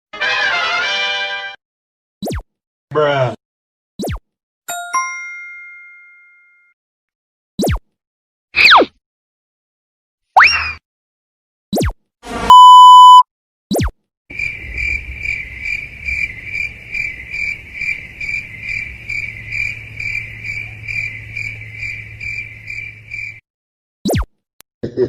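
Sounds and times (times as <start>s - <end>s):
censor beep: 12.5s - 13.2s
cricket chirping: 14.3s - 23.4s.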